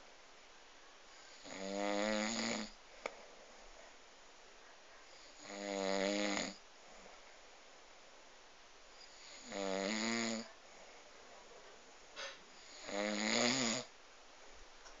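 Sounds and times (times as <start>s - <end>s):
loud snoring: 1.3s - 2.8s, 5.4s - 6.6s, 9.1s - 10.5s, 12.6s - 13.9s.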